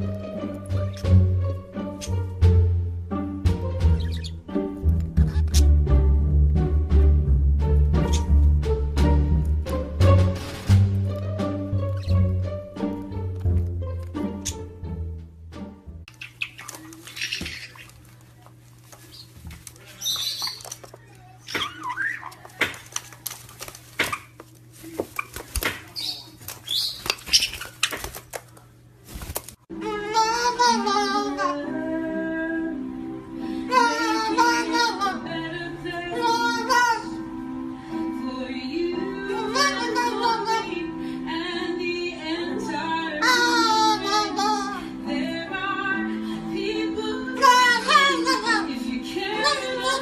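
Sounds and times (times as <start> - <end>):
sustained backing notes: 0.0 - 16.1
parrot warbling and chirping: 3.9 - 4.4, 5.2 - 5.7, 11.9 - 12.3, 16.1 - 18.0, 19.0 - 23.2, 25.2 - 28.1
high-pitched voice singing: 29.7 - 32.6, 33.7 - 37.2, 39.0 - 40.9, 42.5 - 44.8, 46.8 - 50.0.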